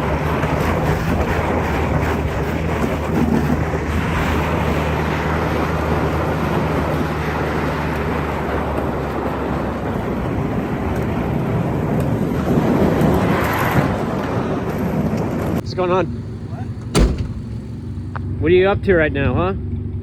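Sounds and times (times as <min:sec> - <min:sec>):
road and wind noise: 0:00.0 - 0:20.0
car engine hum: 0:15.6 - 0:19.1.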